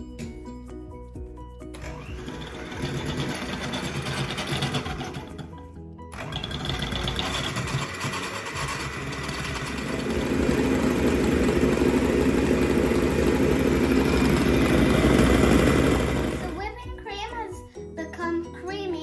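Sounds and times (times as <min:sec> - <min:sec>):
electric hand mixer whipping: 0:01.8 - 0:16.8.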